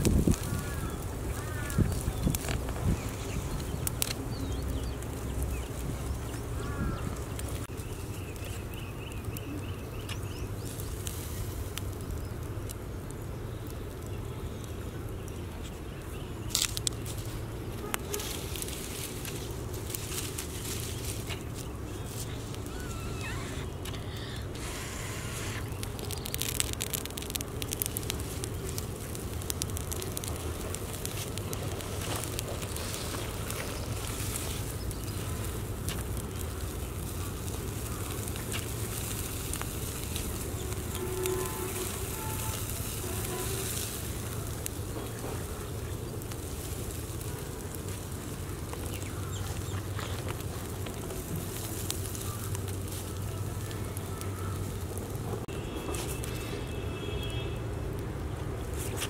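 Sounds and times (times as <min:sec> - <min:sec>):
wood fire crackling: 0:00.0 - 0:59.0.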